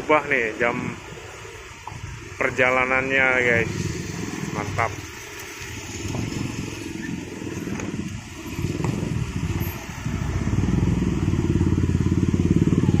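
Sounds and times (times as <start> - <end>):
motorcycle engine running: 2.8 - 13.0.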